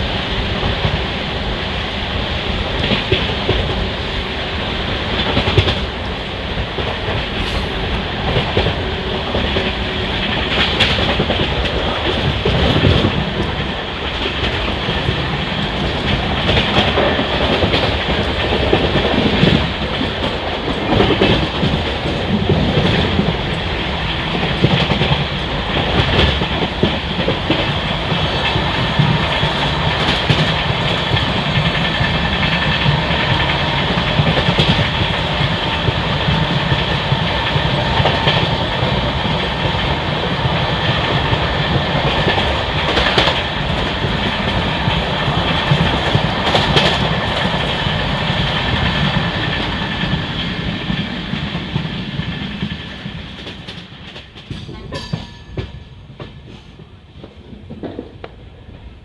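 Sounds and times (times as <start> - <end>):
train rolling noise: 0.0 - 59.0
wheels clattering over rail joints: 53.4 - 58.9.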